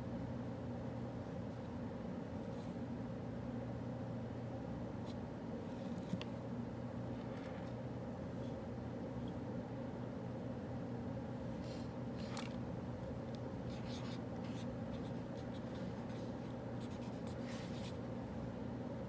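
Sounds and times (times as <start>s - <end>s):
ventilation hum: 0.0s - 19.0s
pen scratching on paper: 13.7s - 18.0s.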